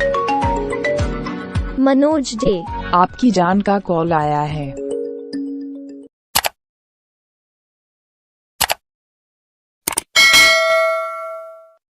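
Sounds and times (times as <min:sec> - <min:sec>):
short clicks: 0:06.4 - 0:06.6, 0:08.6 - 0:08.8
bright bell ding: 0:10.2 - 0:11.8.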